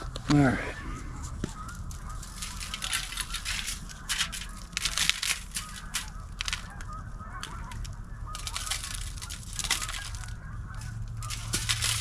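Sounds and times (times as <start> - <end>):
geese honking in the distance: 0.0 - 12.0
sharp clicks and crackles: 0.0 - 12.0.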